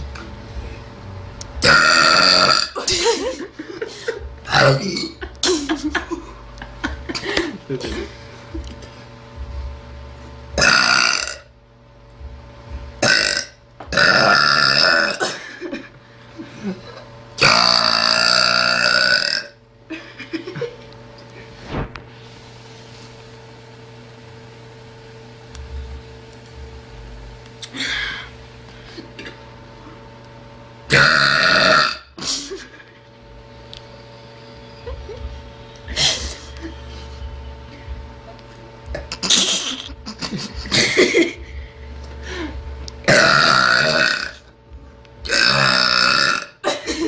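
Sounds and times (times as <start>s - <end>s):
girl burping loudly: 1.6s - 3.0s, 10.6s - 11.5s, 13.0s - 15.4s, 17.4s - 19.6s, 30.9s - 32.2s, 43.0s - 44.5s, 45.3s - 46.8s.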